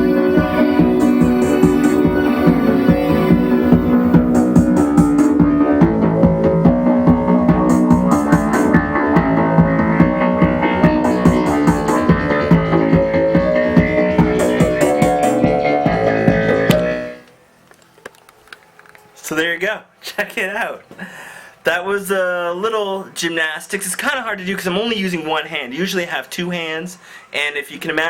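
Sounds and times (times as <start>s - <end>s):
hi-hats: 0.0s - 15.4s
steady kick drum: 0.0s - 17.0s
electronic dance music: 0.0s - 17.2s
synth chords: 0.0s - 17.3s.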